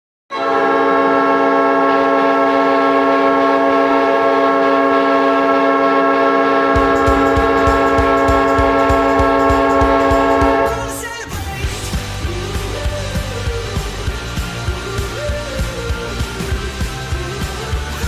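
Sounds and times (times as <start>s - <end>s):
goal horn blast: 0.3s - 11.0s
song drum beat: 6.8s - 18.0s.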